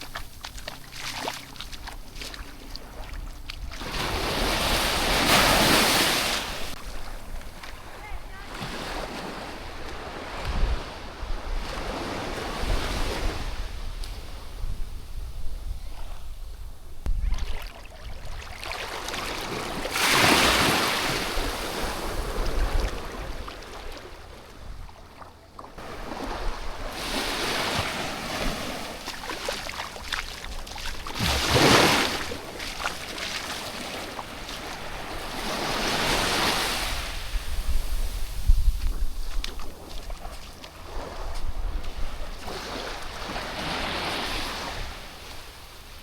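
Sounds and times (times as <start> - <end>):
sea waves breaking: 0.0 - 14.8, 17.2 - 46.0
wind buffeting microphone: 6.5 - 23.7, 34.2 - 43.3.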